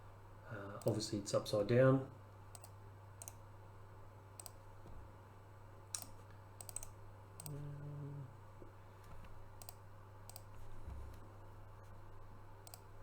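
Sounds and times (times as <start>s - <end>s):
low electrical hum: 0.0s - 13.0s
computer mouse clicks: 2.5s - 3.4s, 4.4s - 4.6s, 5.9s - 7.6s, 9.2s - 11.2s, 12.6s - 13.0s.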